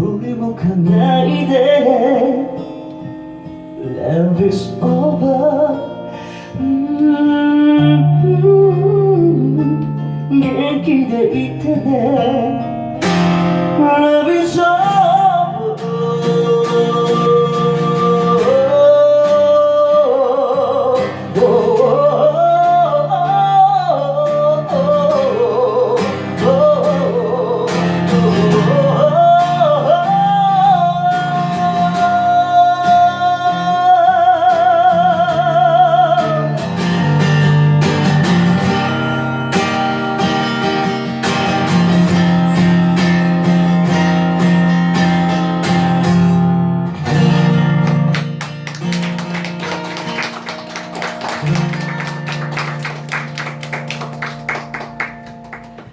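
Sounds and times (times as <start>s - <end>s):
strummed acoustic guitar: 0.0s - 55.9s
person singing: 6.6s - 12.7s, 13.8s - 36.6s.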